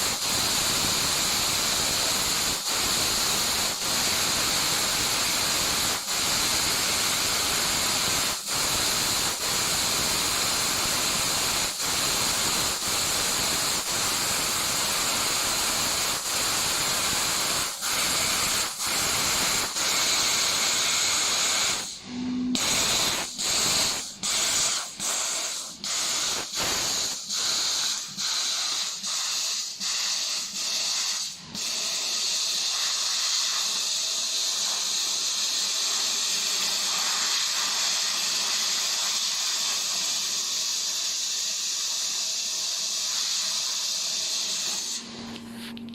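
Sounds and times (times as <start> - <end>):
laser cutter gas hissing: 0.0 - 45.9.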